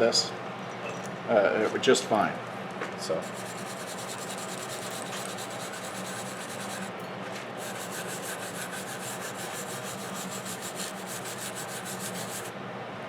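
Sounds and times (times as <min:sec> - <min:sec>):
wire brush scrubbing steel: 0:03.2 - 0:06.9, 0:07.6 - 0:12.5.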